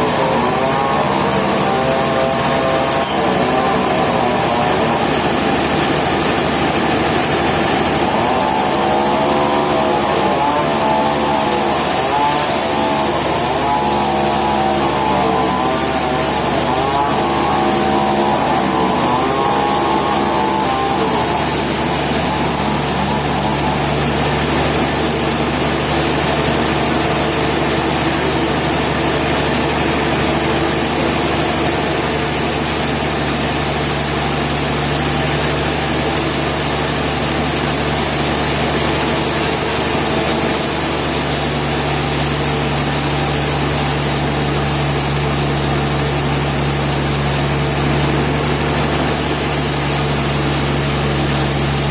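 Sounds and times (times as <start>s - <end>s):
wavering high whine: 0.0s - 7.3s
engine running steadily: 0.0s - 51.9s.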